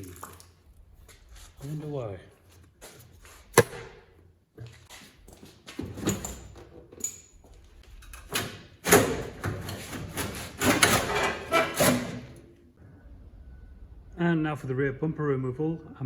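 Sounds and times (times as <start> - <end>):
metal knocks and clanks: 8.2 - 12.4
metal scraping: 9.7 - 12.4.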